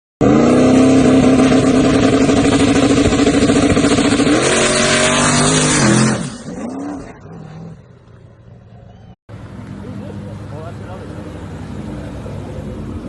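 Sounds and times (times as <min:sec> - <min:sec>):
car engine revving: 0:00.2 - 0:08.6.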